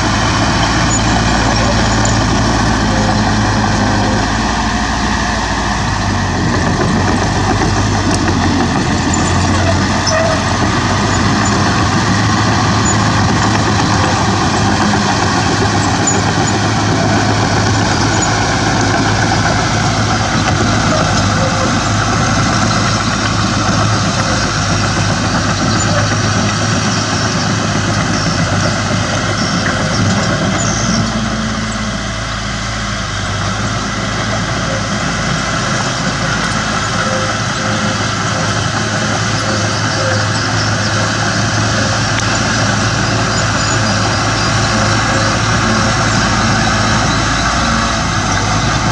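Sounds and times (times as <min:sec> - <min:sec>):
heavy diesel engine running: 0:00.0 - 0:48.9.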